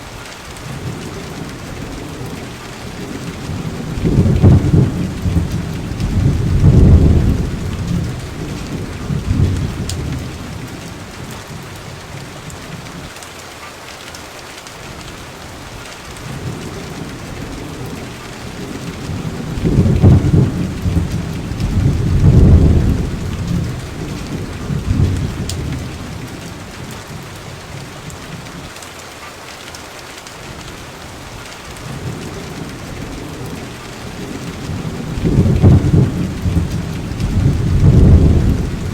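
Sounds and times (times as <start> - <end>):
steady rain: 0.0 - 38.9
rolling thunder: 0.7 - 11.6, 16.2 - 27.7, 31.8 - 38.9.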